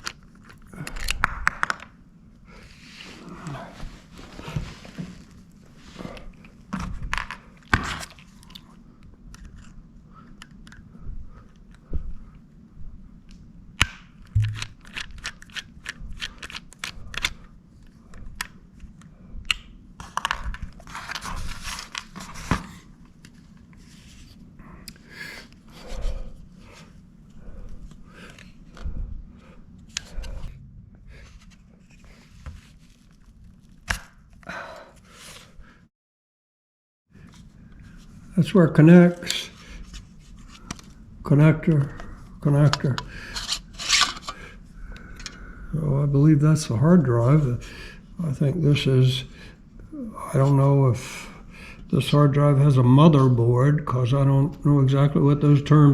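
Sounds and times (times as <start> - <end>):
faint low hum: 0.0 - 34.9.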